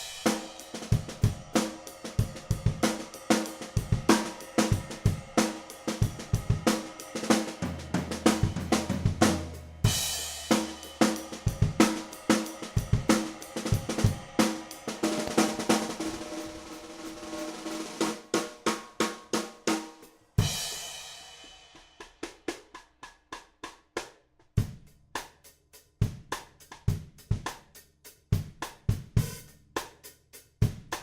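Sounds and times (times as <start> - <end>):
bass drum: 0.0 - 16.9, 28.4 - 30.0, 30.6 - 31.0
cymbal crashes: 0.0 - 18.6
hi-hat: 0.0 - 19.0, 24.8 - 31.0
snare drum groove: 0.0 - 31.0.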